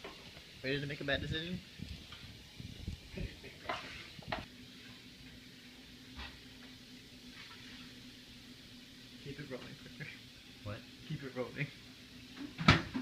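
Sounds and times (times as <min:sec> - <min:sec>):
microwave oven humming: 0:04.4 - 0:13.0
microwave oven clicks and knocks: 0:12.4 - 0:13.0.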